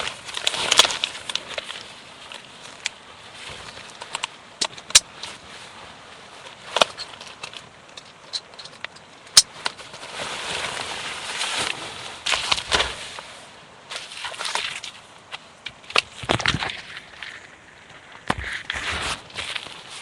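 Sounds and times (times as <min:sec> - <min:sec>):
scraping on rocks: 0:13.9 - 0:20.0.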